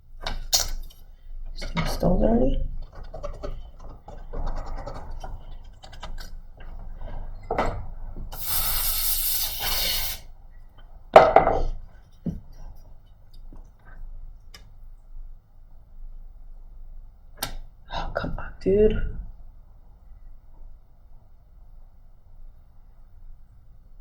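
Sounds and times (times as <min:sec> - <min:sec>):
scrubbing and scratching circuit board: 0:02.6 - 0:07.2
spray hiss: 0:08.3 - 0:10.3.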